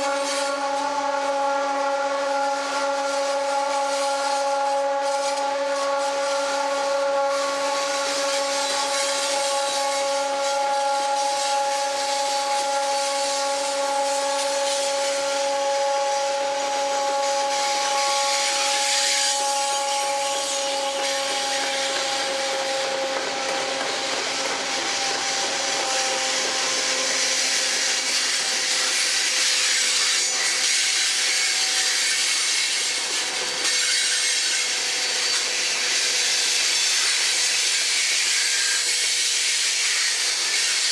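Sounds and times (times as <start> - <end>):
steady whine: 0.0 - 29.6
train wheels grinding on rails: 0.0 - 40.9.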